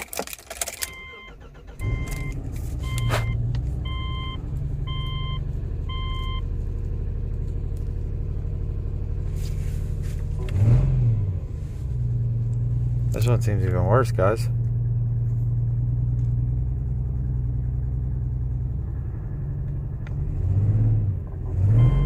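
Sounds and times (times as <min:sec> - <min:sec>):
car engine idling rough: 0:00.0 - 0:20.3
dashboard warning chime: 0:00.9 - 0:06.4.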